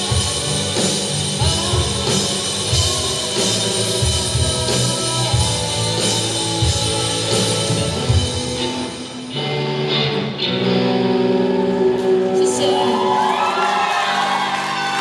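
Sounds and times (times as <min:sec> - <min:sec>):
electric guitar chords: 0:00.0 - 0:15.0
rock band playing: 0:00.0 - 0:15.0.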